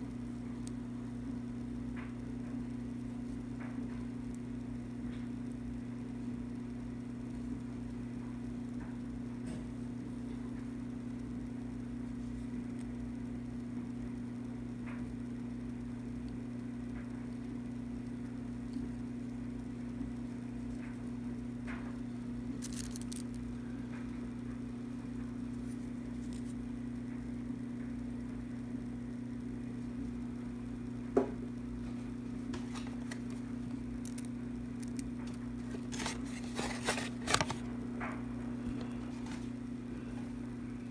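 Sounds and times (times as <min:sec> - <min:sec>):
low electrical hum: 0:00.0 - 0:40.9
faint clicks and rustles: 0:31.8 - 0:37.7, 0:38.6 - 0:40.4.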